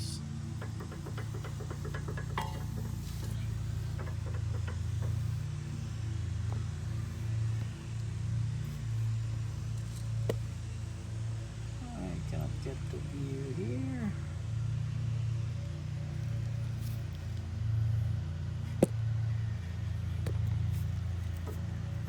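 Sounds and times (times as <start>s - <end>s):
steady low hum: 0.0s - 22.0s
suspension link clicking and knocking: 0.4s - 6.9s.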